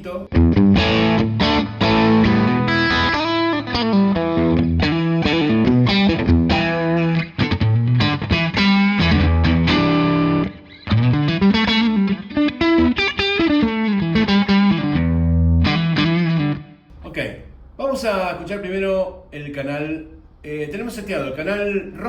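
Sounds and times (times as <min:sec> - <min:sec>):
electric guitar with light crunch: 0:00.3 - 0:16.8.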